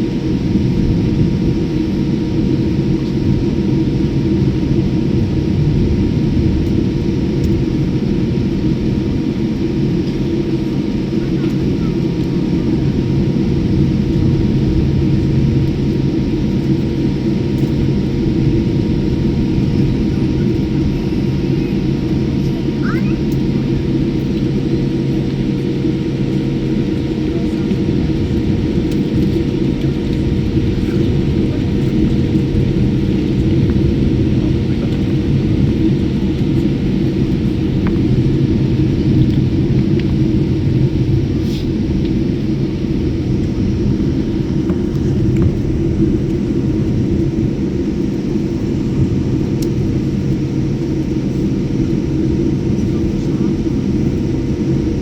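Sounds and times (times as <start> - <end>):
airliner engines droning: 0.0 - 55.0.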